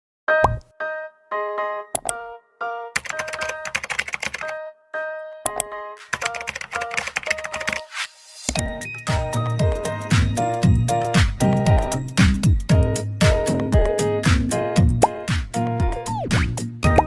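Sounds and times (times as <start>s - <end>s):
electronic phone ringtone melody: 4.4s - 7.8s
clicking percussion: 11.6s - 12.0s.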